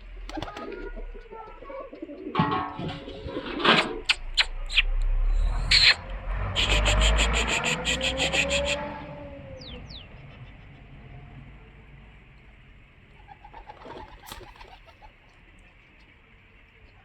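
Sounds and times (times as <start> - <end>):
pigeons cooing: 0.0 - 4.8, 13.1 - 15.3
fast run of sharp ticks: 0.2 - 0.8, 13.6 - 15.7.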